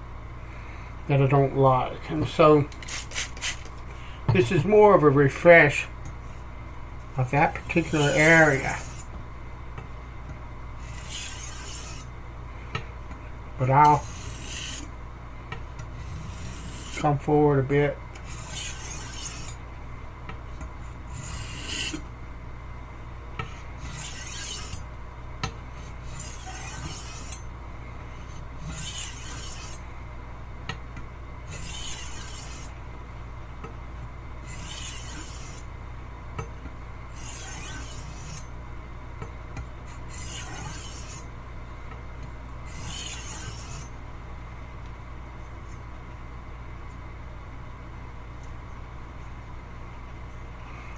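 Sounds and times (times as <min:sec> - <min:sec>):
knife scraping on sharpening stone: 0:07.8 - 0:09.0, 0:10.8 - 0:12.1, 0:18.2 - 0:19.6, 0:21.1 - 0:22.0, 0:23.8 - 0:24.8, 0:26.1 - 0:27.4, 0:28.6 - 0:29.8, 0:31.5 - 0:32.7, 0:34.5 - 0:35.6, 0:37.2 - 0:38.5, 0:40.1 - 0:41.2, 0:42.7 - 0:43.9.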